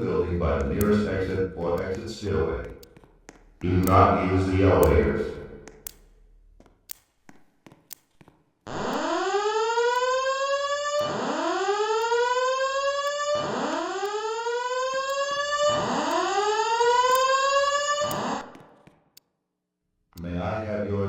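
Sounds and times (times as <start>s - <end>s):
spoken announcements: 0.0s - 2.8s, 3.6s - 5.6s, 20.2s - 21.0s
faint clicks: 0.6s - 4.0s, 4.8s - 9.1s, 11.0s - 11.2s.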